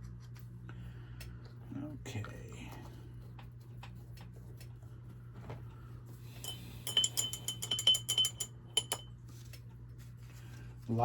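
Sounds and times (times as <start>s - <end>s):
ball bearing rattling in glass bottle: 6.4s - 9.1s.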